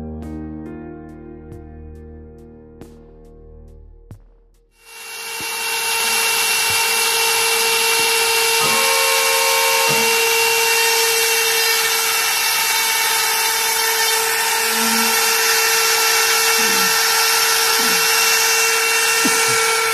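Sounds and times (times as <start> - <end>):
power cutting tool whining: 4.8 - 19.9.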